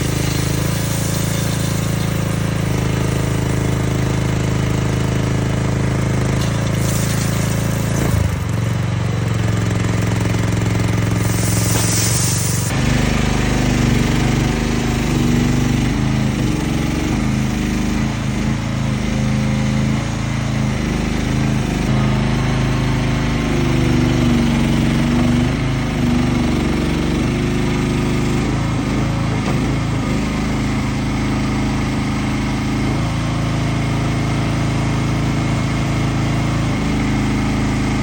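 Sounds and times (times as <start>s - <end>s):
short hiss: 0.0s - 2.7s, 6.4s - 8.3s, 11.1s - 12.7s
loader engine running: 0.0s - 38.0s.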